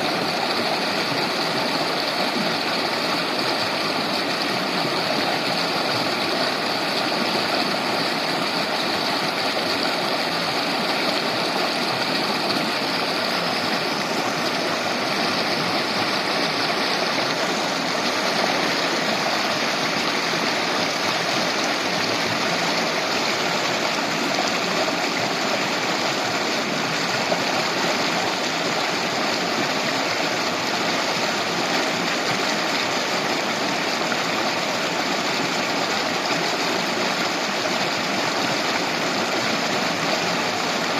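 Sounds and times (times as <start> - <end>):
river flowing over stones: 0.0 - 40.9.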